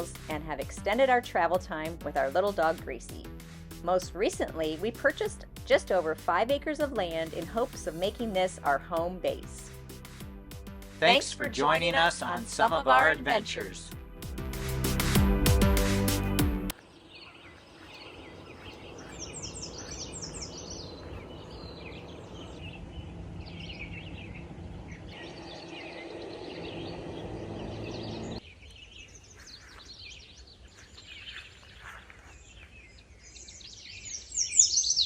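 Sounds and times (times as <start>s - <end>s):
outdoor background noise: 16.7s - 35.0s
small birds chirping: 16.7s - 35.0s.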